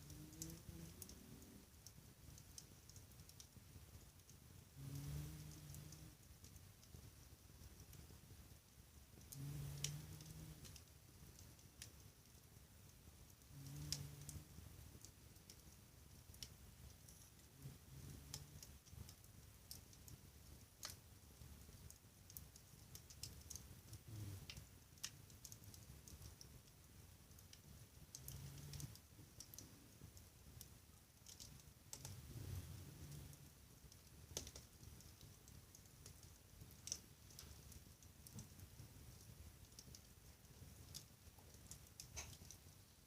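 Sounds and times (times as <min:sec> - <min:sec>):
wood fire crackling: 0:00.0 - 0:43.0
faint low rumble: 0:31.8 - 0:34.2.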